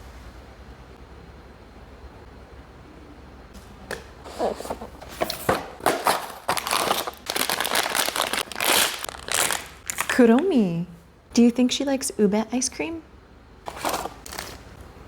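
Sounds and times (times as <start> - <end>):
plastic wrapping crinkling and tearing: 6.0 - 10.2, 13.7 - 14.6.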